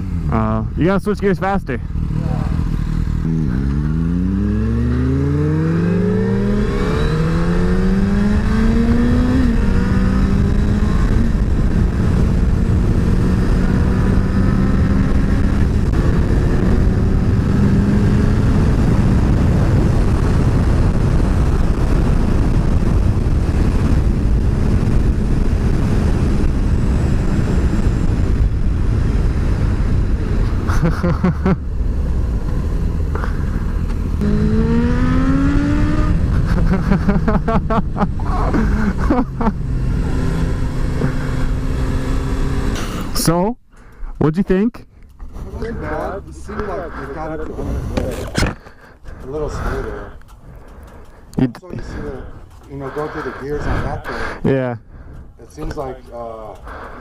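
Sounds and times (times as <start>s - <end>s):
motorcycle engine accelerating: 0.0s - 43.5s
wind noise: 4.6s - 43.2s.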